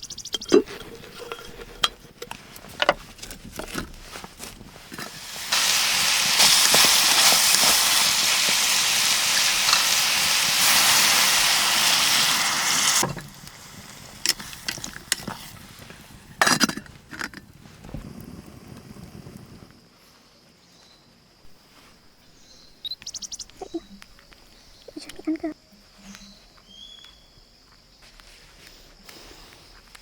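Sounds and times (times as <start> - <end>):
food sizzling in hot oil: 4.8 - 16.6.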